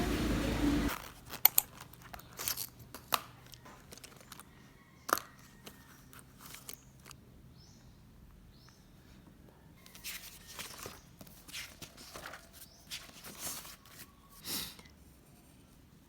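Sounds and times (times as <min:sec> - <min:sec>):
steady rumbling noise: 0:00.0 - 0:00.9
crinkling and tearing: 0:00.9 - 0:04.5.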